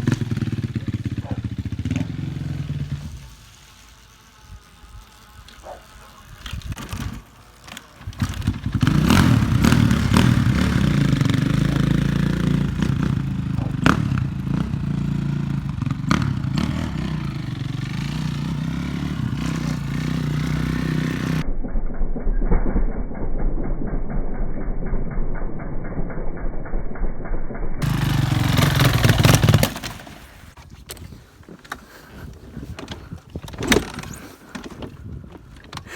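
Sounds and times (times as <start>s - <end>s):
motorcycle engine running loudly: 0.0s - 7.2s, 8.0s - 21.5s, 27.8s - 30.6s.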